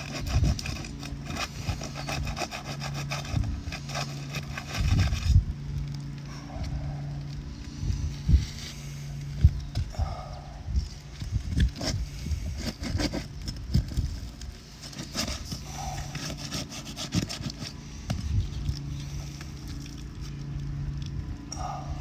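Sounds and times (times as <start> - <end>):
tool prying roof shingles: 0.0 - 5.4, 11.6 - 14.2, 14.8 - 17.7
steady low hum: 0.0 - 22.0.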